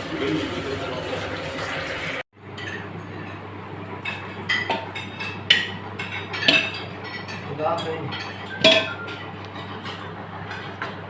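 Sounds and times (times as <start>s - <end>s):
metal utensil clinking on pot: 4.1s - 9.2s.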